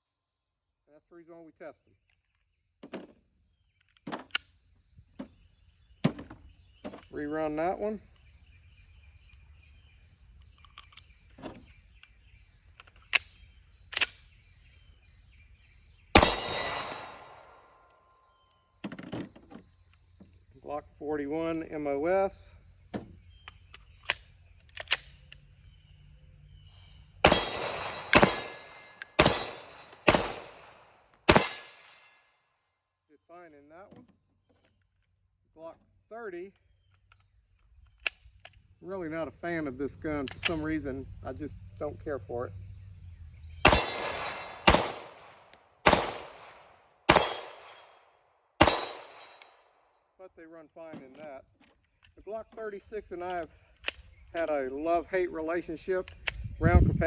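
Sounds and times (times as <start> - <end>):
pistol shots with ringing tail: 16.1 - 17.9, 27.2 - 32.2, 43.6 - 48.0, 48.6 - 49.6.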